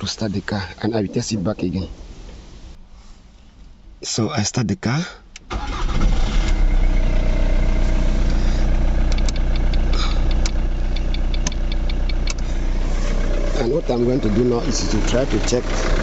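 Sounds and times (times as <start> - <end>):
car engine starting and idling: 5.2 - 16.0
light ticks: 9.1 - 12.5.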